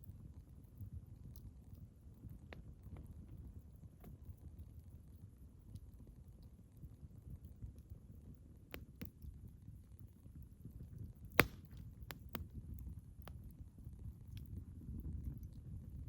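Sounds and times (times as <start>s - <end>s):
wood fire crackling: 0.0s - 16.0s
firewood popping loudly: 11.3s - 12.4s.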